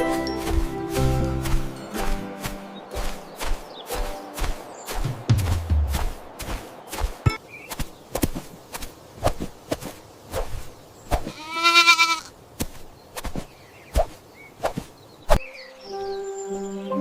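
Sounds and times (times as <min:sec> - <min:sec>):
long quavering bleat: 0:11.3 - 0:12.3.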